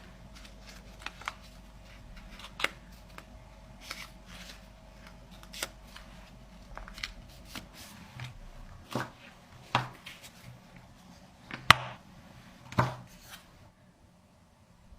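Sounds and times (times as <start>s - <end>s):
paper rustling and crackling: 0.0s - 10.6s.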